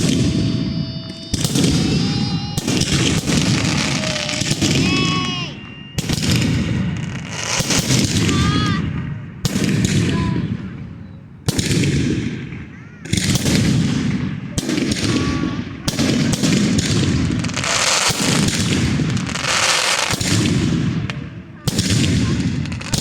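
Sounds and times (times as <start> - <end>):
firework whistles: 0.0 - 8.7, 14.6 - 20.4
fireworks bangs: 0.0 - 23.0.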